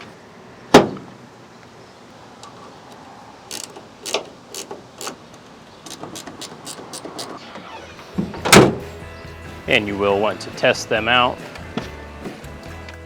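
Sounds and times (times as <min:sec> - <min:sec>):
ratchet wrench clicking: 0:03.5 - 0:05.2, 0:05.9 - 0:07.4
loud thump: 0:08.2 - 0:08.9.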